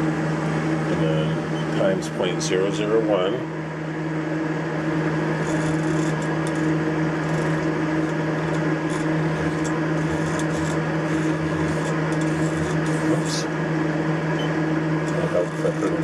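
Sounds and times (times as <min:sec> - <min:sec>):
milling machine humming: 0:00.0 - 0:16.0.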